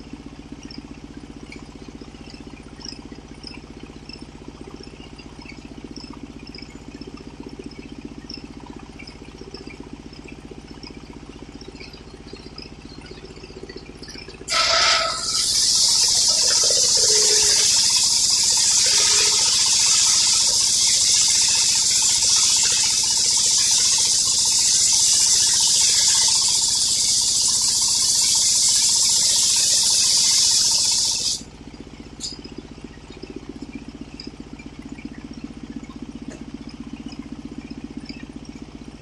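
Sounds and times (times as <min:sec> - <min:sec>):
mill engine running: 0:13.6 - 0:31.4
circular saw cutting log: 0:14.5 - 0:31.4.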